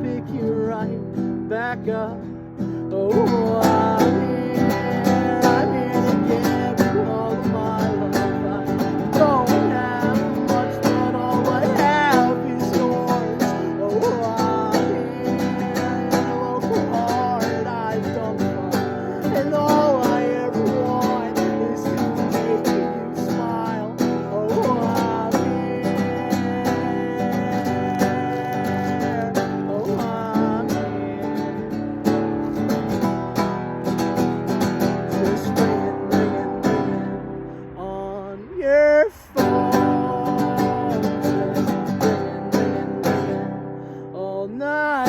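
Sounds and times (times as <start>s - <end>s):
acoustic guitar strumming with melody: 0.0s - 45.0s.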